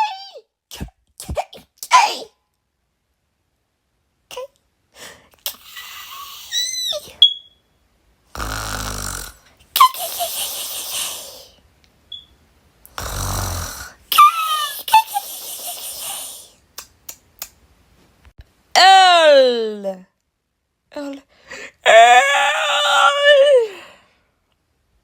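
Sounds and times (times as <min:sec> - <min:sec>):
person imitating snoring: 0:08.3 - 0:11.5, 0:12.9 - 0:14.0.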